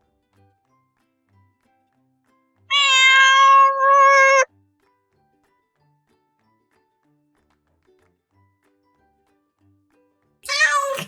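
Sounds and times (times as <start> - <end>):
cat meowing: 2.7 - 4.5, 10.4 - 11.0.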